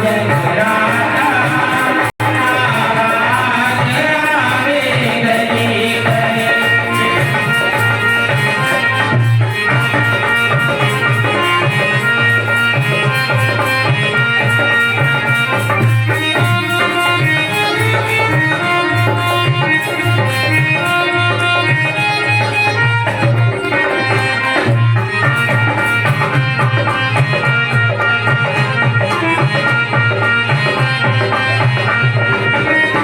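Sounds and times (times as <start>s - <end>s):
steady drum beat: 0.0s - 20.9s
devotional music: 0.0s - 33.0s
melodic instrumental line: 0.0s - 33.0s.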